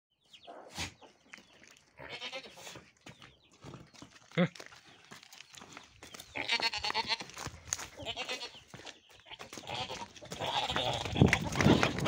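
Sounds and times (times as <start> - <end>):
goats bleating: 2.0 - 2.6, 6.4 - 7.4, 8.0 - 8.6, 9.2 - 12.0
scuffling: 2.6 - 12.0.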